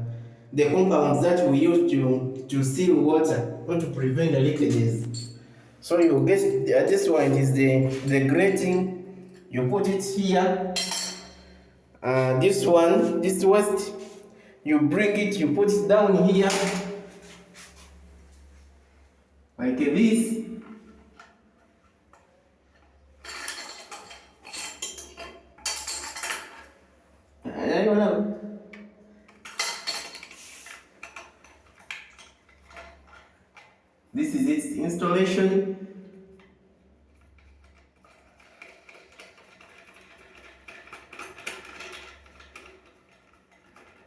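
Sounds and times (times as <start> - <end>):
waste fitting clinking on basin: 10.8 - 11.6, 16.4 - 17.1
plastic parts clicking and scraping: 37.2 - 44.0.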